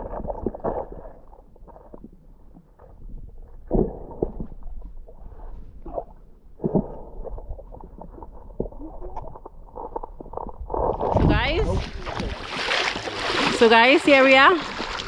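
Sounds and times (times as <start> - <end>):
underwater river gurgling: 0.0 - 15.0
dull underwater knocks: 6.6 - 15.0.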